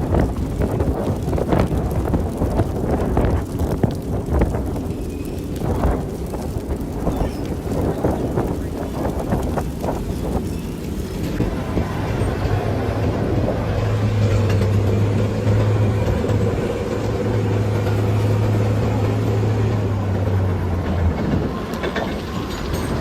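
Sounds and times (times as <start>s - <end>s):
low engine hum: 0.0s - 23.0s.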